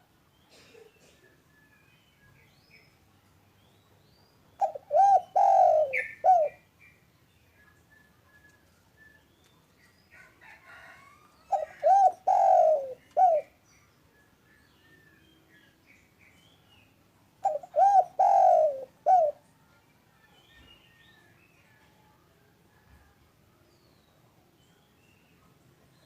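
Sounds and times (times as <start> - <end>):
dove cooing: 4.6 - 6.7, 11.5 - 13.6, 17.4 - 19.4
faint small bird chirps: 19.1 - 22.0.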